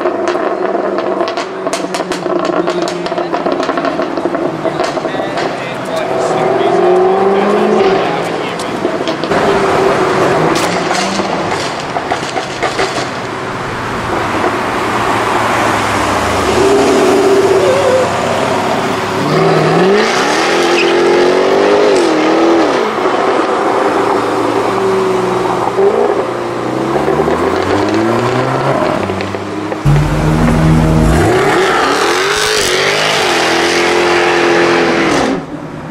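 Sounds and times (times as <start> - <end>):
car engine revving: 0.0 - 13.0, 26.0 - 35.2.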